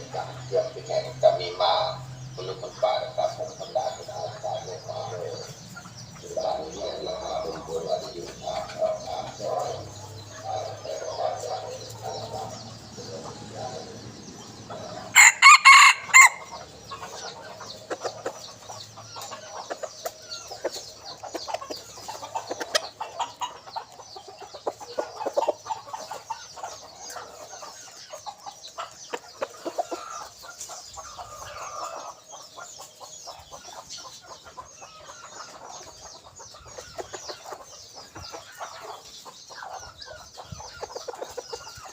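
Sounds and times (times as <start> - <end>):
rooster clucking: 0.0 - 41.9
rooster crowing: 14.9 - 16.6.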